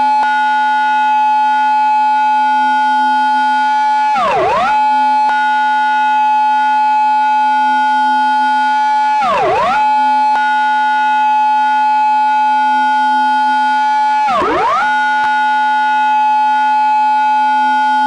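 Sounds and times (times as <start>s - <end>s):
police car siren: 0.0s - 18.0s.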